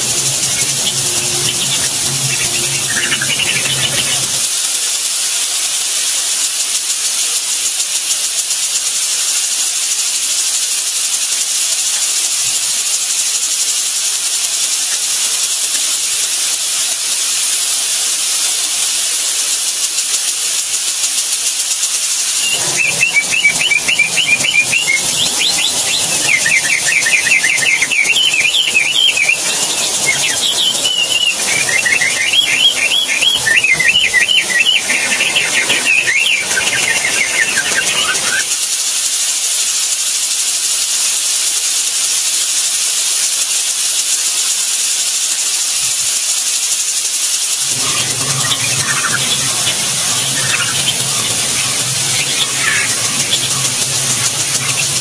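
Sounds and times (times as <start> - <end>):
steady high hiss: 0.0 - 55.0
weaver birds chattering: 0.0 - 55.0.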